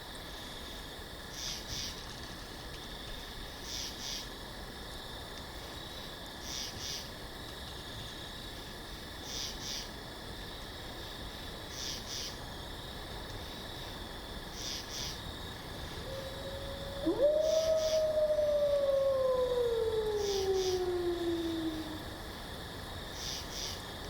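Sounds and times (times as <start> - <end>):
animal howl: 15.9 - 22.2.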